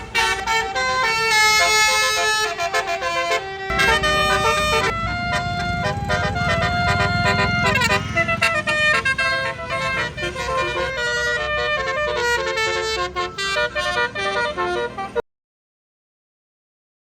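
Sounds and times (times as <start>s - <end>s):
bus engine idling: 0.0s - 15.2s
multi-tone bus horn playing a tune: 0.0s - 15.2s.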